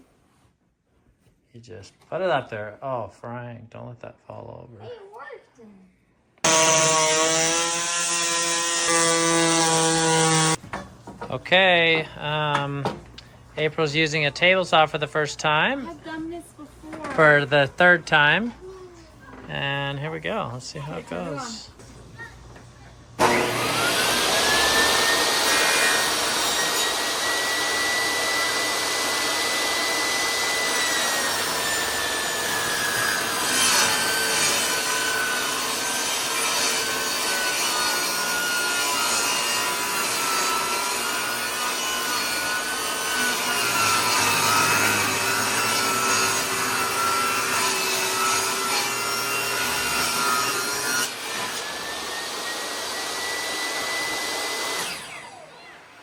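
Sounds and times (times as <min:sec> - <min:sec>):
saw blade cutting wood: 0:06.4 - 0:10.6, 0:23.2 - 0:55.4
table saw whine: 0:06.4 - 0:10.6, 0:23.2 - 0:56.0.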